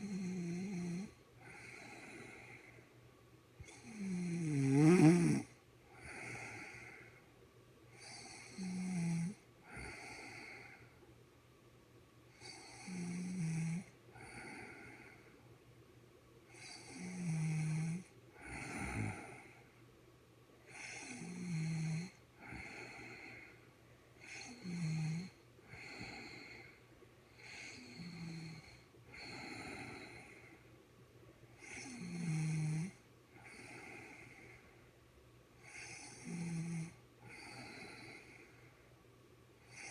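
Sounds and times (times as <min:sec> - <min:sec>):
woman snoring: 0:00.0 - 0:02.6, 0:03.6 - 0:06.9, 0:08.0 - 0:10.6, 0:12.4 - 0:14.9, 0:16.6 - 0:19.5, 0:20.7 - 0:23.3, 0:24.2 - 0:26.6, 0:27.4 - 0:30.4, 0:31.6 - 0:34.4, 0:35.7 - 0:38.4
soft breath: 0:01.4 - 0:03.0, 0:05.9 - 0:07.3, 0:22.4 - 0:24.6, 0:25.6 - 0:30.8, 0:33.3 - 0:35.0, 0:37.2 - 0:39.0.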